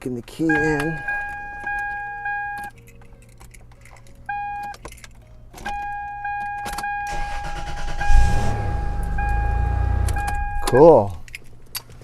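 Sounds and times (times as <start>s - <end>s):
keys clicking in ignition: 0.0s - 12.0s
dashboard warning chime: 0.4s - 2.7s, 4.3s - 4.8s, 5.7s - 11.0s
starter cranking engine: 7.1s - 10.8s.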